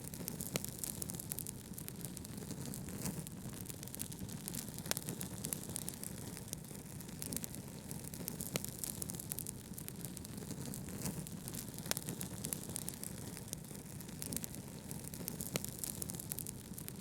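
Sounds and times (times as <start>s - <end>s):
wood fire crackling and popping: 0.0s - 17.0s.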